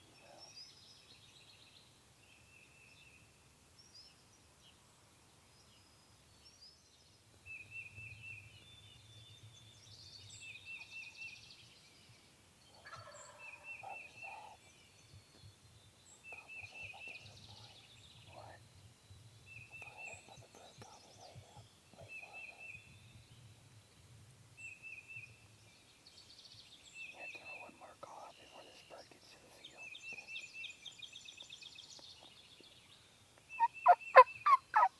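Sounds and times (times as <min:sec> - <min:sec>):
turkeys gobbling faintly: 0:12.8 - 0:14.6, 0:33.6 - 0:34.9
small bird trilling: 0:33.6 - 0:34.9.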